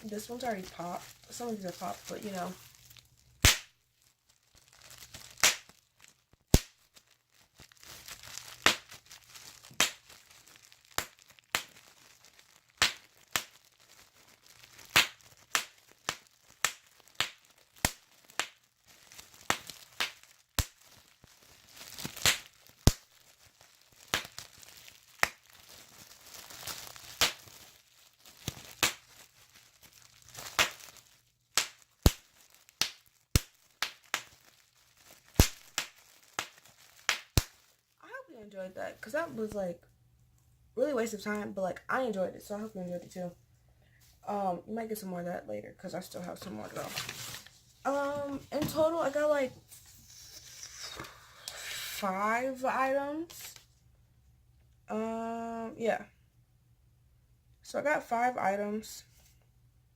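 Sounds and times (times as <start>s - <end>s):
plastic crinkling: 0.0s - 38.1s, 46.0s - 53.8s
bubble wrap popping: 0.0s - 38.2s, 46.0s - 53.8s.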